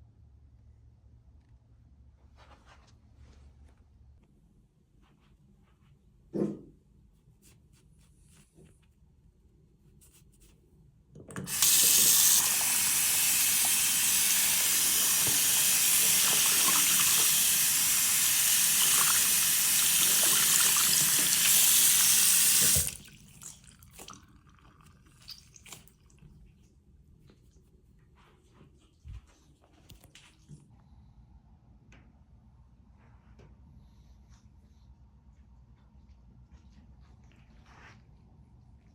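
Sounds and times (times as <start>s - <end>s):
tap water running into sink: 11.3s - 25.9s.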